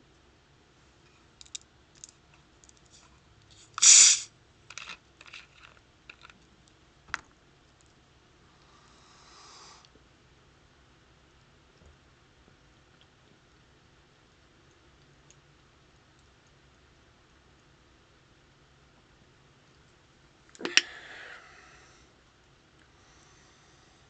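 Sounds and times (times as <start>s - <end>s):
fizzing hiss of carbonation: 3.8s - 4.3s.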